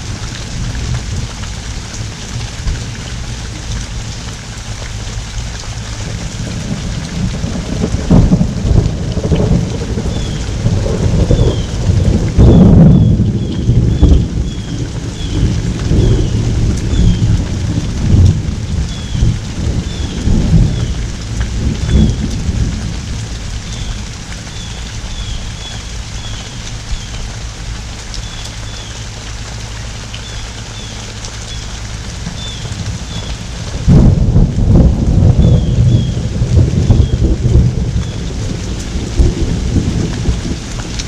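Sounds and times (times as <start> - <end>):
heavy rain pouring: 0.0 - 41.0
thunder rumbling: 6.0 - 26.3, 32.0 - 41.0.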